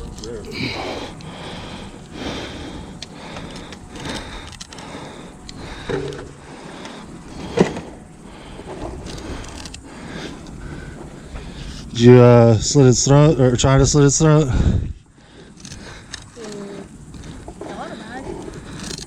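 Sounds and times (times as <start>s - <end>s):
low wind rumble on microphone: 0.0s - 19.0s
gear knocks and clicks: 2.9s - 6.4s, 8.6s - 11.8s, 15.4s - 19.0s.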